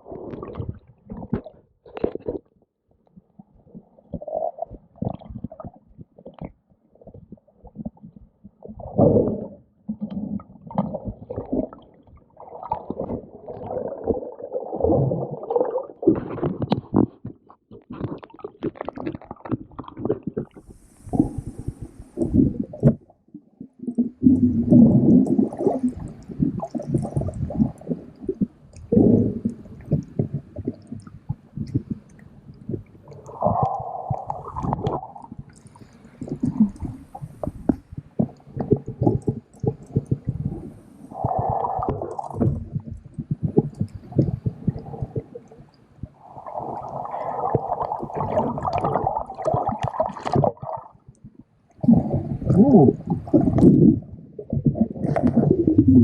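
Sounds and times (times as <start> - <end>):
underwater water sloshing: 8.8 - 51.4.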